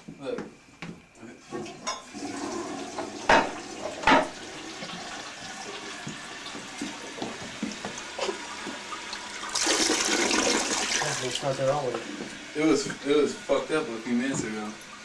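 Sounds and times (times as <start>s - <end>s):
toilet flushing: 1.4s - 15.0s.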